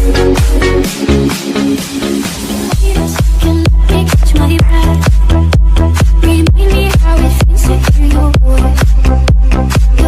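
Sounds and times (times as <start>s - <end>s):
electronic dance music: 0.0s - 10.0s
kick drum beat: 0.0s - 10.0s.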